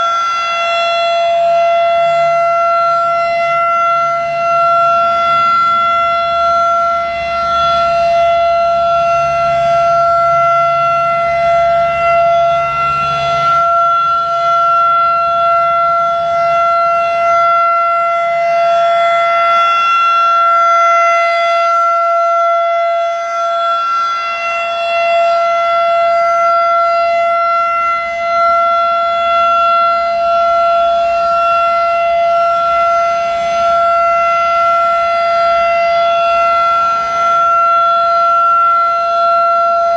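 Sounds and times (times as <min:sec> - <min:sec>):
rotating warning siren: 0:00.0 - 0:39.9.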